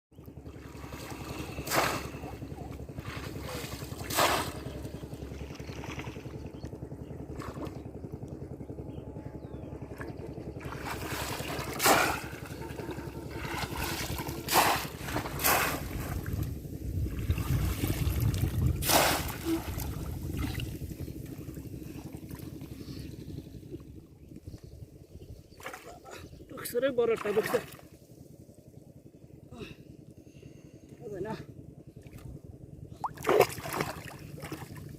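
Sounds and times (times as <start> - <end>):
steady low rumble: 0.1 - 34.9
water splashing and sloshing: 0.2 - 6.6, 7.2 - 8.2, 9.8 - 22.8, 25.5 - 26.4, 27.0 - 28.0, 32.0 - 34.9
sharp splashes: 3.0 - 4.7, 10.6 - 16.3, 17.3 - 20.7, 33.0 - 34.9.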